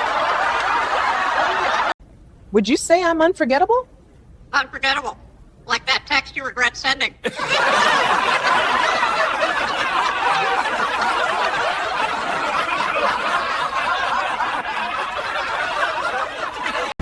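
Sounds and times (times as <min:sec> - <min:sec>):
crowd laughing: 0:00.0 - 0:02.0, 0:07.2 - 0:17.0.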